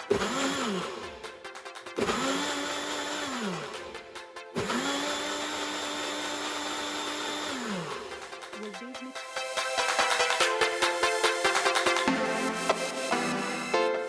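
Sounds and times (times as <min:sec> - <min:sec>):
blender motor running: 0:02.0 - 0:03.7, 0:04.6 - 0:08.1.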